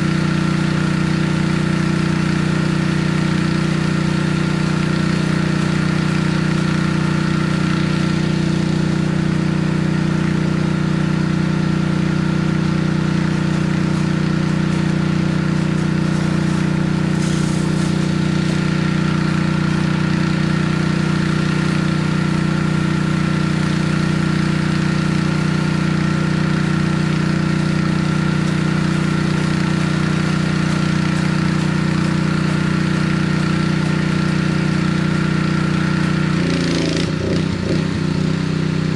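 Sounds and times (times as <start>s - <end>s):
pressure washer engine running: 0.0s - 38.9s.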